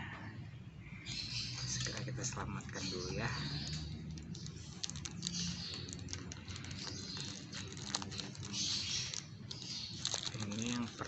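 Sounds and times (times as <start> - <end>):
plastic bag rustling: 3.0 - 11.0.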